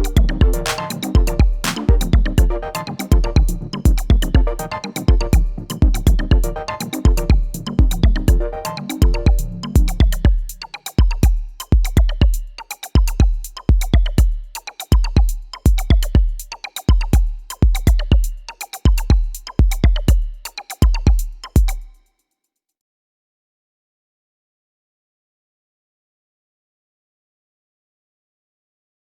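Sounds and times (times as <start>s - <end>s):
electronic music with drum beat: 0.0s - 22.0s.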